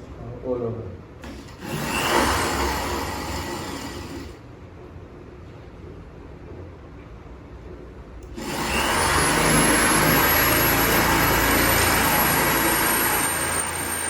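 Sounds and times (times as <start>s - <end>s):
electric drill whining: 1.2s - 4.4s, 8.3s - 14.0s.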